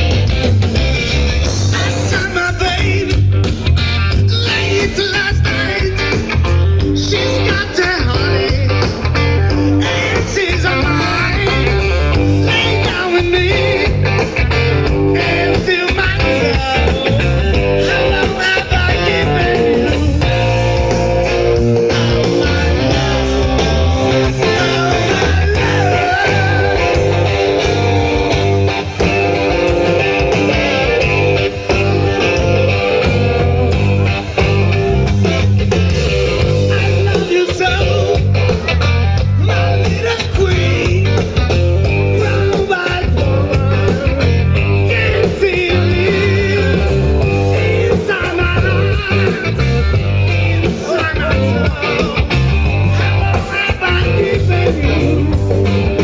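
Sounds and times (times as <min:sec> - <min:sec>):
bass guitar: 0:00.0 - 0:56.0
drums: 0:00.0 - 0:56.0
electric guitar: 0:00.0 - 0:56.0
person singing: 0:09.7 - 0:14.3, 0:15.0 - 0:28.3, 0:29.4 - 0:34.7, 0:36.2 - 0:38.8, 0:39.4 - 0:41.3, 0:42.0 - 0:56.0.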